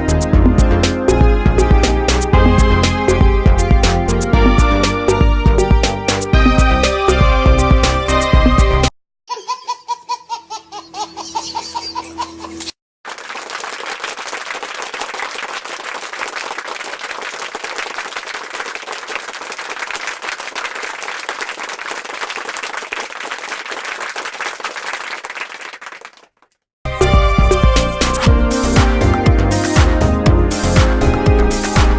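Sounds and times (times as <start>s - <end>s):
laughter in rhythmic pulses: 9.3s - 12.7s
applause: 13.0s - 26.6s.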